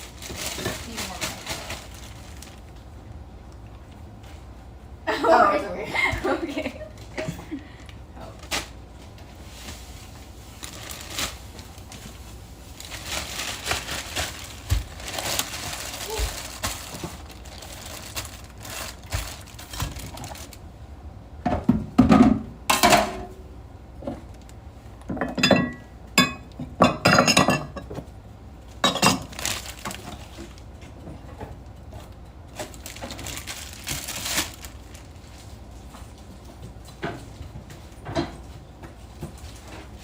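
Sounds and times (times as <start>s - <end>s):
dishes and utensils clattering: 25.1s - 28.0s, 28.8s - 29.4s.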